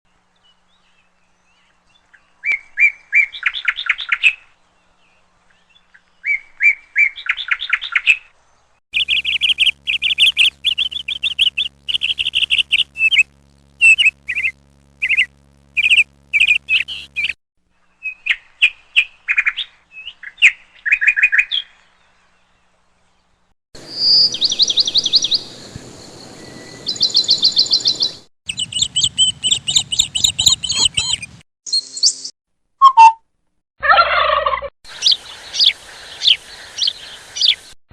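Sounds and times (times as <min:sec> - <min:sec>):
birds chirping and trilling: 0:00.3 - 0:32.3, 0:34.1 - 0:37.8
low steady hum: 0:09.0 - 0:17.8.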